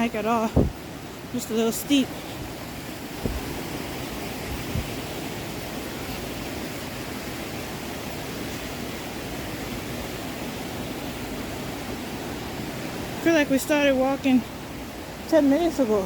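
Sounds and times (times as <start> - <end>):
waterfall rushing: 0.0 - 16.0
low bumps: 3.0 - 5.2.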